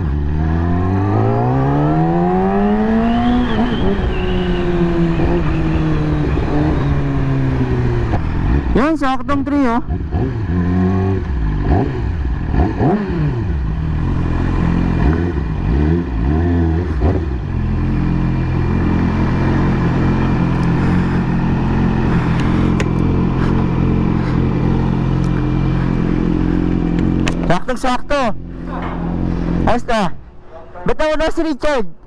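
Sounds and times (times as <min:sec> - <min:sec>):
motorcycle engine revving: 0:00.0 - 0:30.2
motorcycle engine idling: 0:17.4 - 0:27.5.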